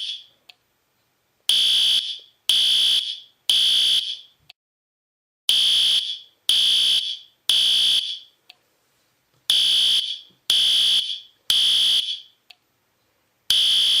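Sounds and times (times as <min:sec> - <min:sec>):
fire alarm beeps: 0:13.5 - 0:14.0.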